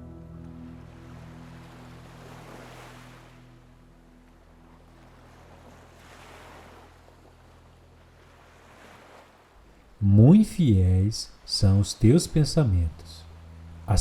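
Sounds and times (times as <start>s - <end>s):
soft low musical drone: 0.0s - 8.9s, 9.6s - 14.0s
ocean waves washing onto shore: 0.5s - 14.0s.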